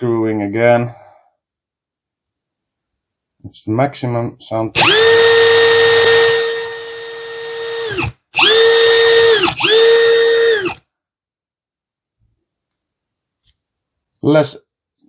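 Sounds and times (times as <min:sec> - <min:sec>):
cordless drill whining: 0:04.8 - 0:10.8.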